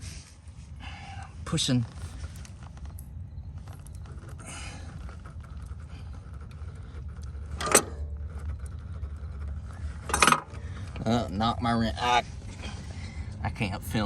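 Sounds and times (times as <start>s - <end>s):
low steady rumble: 0.0s - 14.0s
crowbar clinking and scraping metal: 6.2s - 11.3s.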